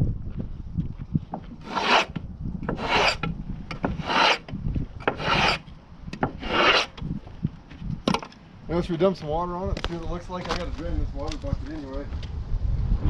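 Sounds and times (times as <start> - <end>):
brush sweeping sawdust off board: 1.6 - 2.2, 2.8 - 3.2, 3.9 - 4.4, 5.1 - 5.6, 6.4 - 6.9.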